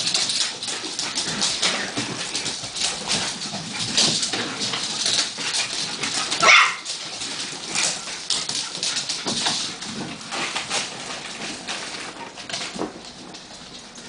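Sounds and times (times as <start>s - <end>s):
puppy yelping: 6.4s - 6.9s.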